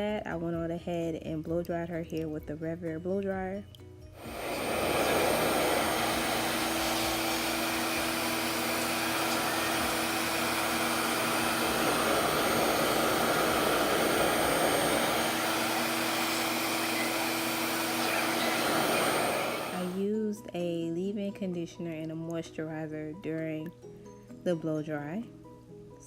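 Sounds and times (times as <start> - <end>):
blow dryer running: 4.2 - 20.1.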